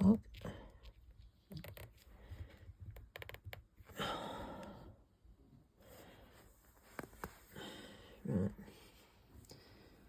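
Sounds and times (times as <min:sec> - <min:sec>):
person sighing: 0:03.9 - 0:04.9.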